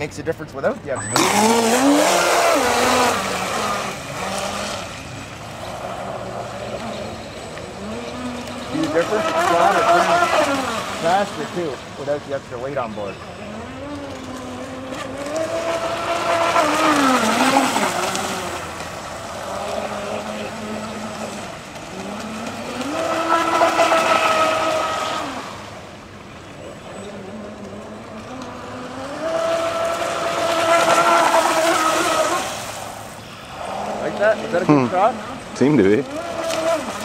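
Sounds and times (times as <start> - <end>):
model boat electric motor whining: 1.0 - 37.0.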